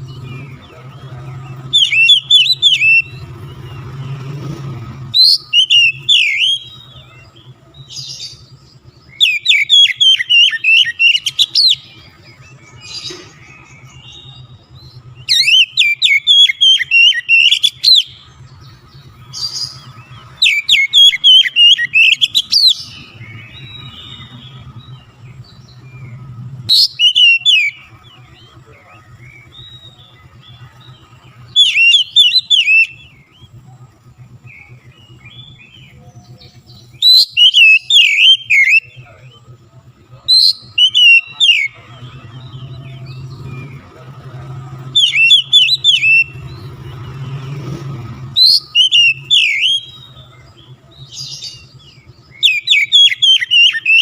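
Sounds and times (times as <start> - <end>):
bird singing: 0.0 - 54.0.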